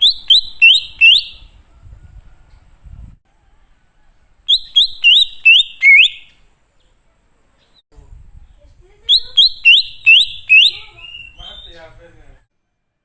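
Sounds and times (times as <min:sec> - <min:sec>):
bird singing upward-sweeping notes: 0:04.5 - 0:06.4, 0:09.1 - 0:11.9.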